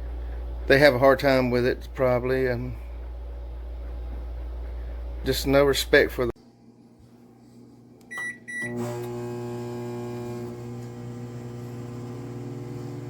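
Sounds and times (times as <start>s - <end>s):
microwave oven humming: 0.0s - 13.0s
microwave keypad beeps: 8.1s - 8.8s.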